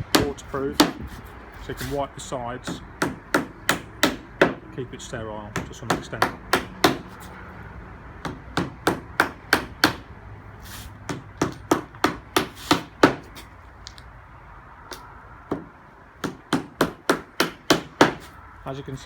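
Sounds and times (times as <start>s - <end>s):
hammer striking nails: 0.0s - 1.0s, 2.6s - 4.6s, 5.5s - 7.2s, 8.2s - 10.1s, 11.1s - 13.3s, 15.5s - 18.3s.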